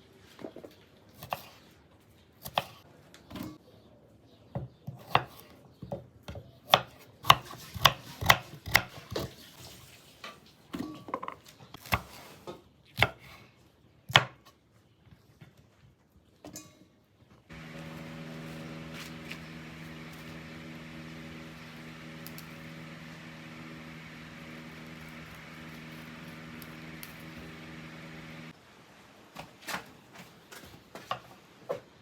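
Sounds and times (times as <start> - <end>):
small electric motor humming: 17.5 - 28.5.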